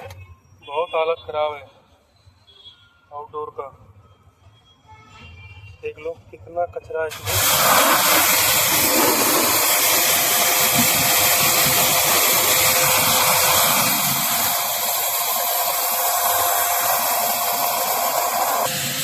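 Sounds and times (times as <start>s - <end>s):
pressure washer jet hissing: 7.1s - 19.0s.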